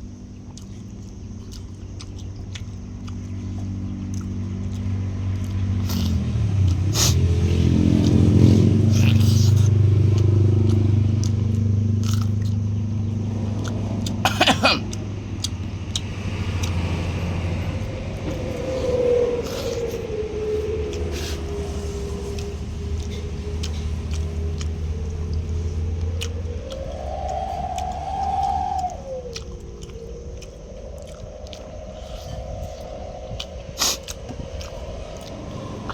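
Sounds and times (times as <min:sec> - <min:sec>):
vehicle engine running: 0:00.0 - 0:27.0, 0:29.6 - 0:35.9
chewing clicks: 0:00.0 - 0:35.9.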